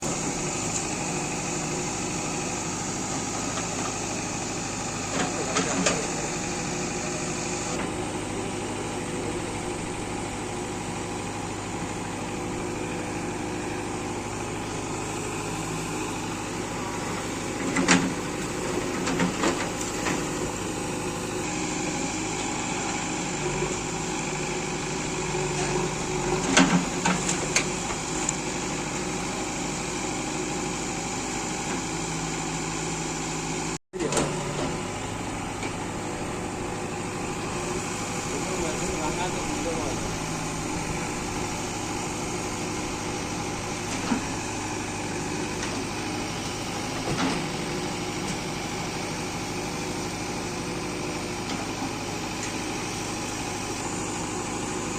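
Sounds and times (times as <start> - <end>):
diesel engine running: 0.0 - 54.9.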